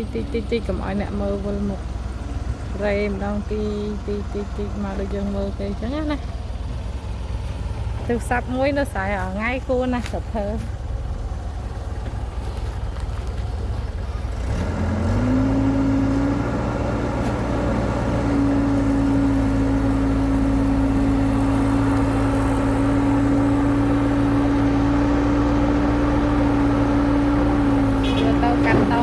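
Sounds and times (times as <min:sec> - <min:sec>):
excavator diesel engine running: 0:00.0 - 0:29.0.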